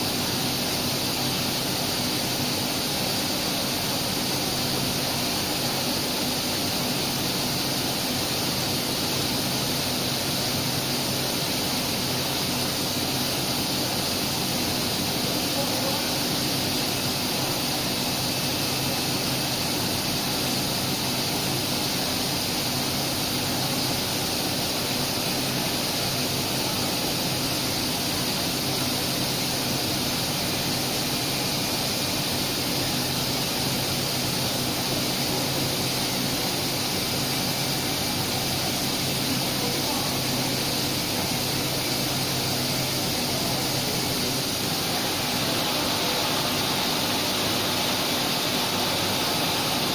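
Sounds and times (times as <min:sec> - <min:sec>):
grinding machine hiss and hum: 0:00.0 - 0:49.9.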